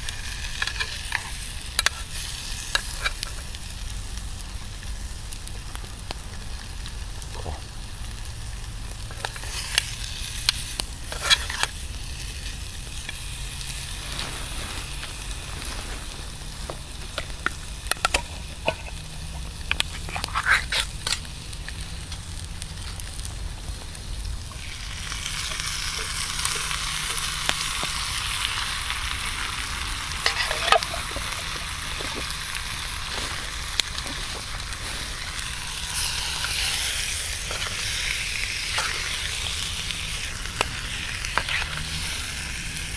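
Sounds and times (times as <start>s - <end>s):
meat sizzling in a pan: 0.0s - 42.9s
utensil scraping a pan: 11.0s - 11.8s, 19.8s - 21.3s, 30.1s - 32.3s.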